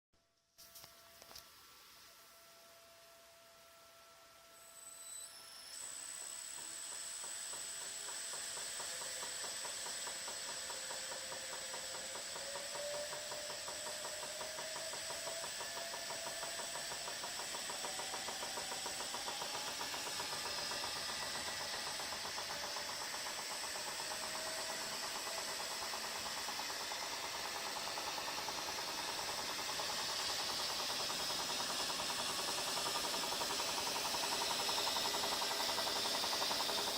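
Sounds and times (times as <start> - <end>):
machine knocking rapidly: 7.0 - 36.9.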